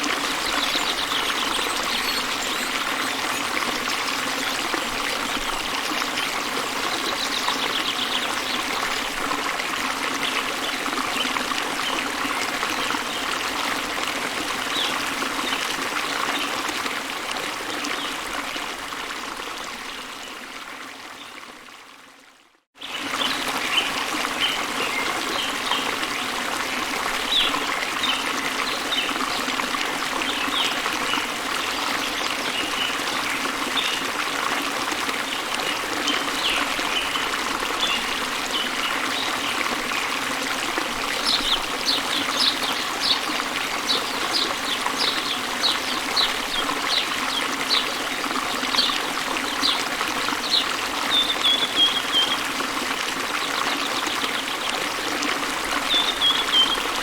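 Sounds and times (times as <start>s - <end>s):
small birds chirping: 0.2s - 3.6s
waterfall rushing: 36.4s - 52.6s.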